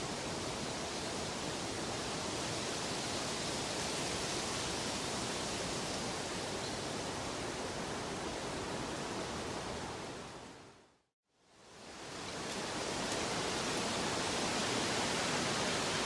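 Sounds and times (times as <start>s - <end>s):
steady rushing hiss: 0.0s - 10.8s, 11.4s - 16.0s.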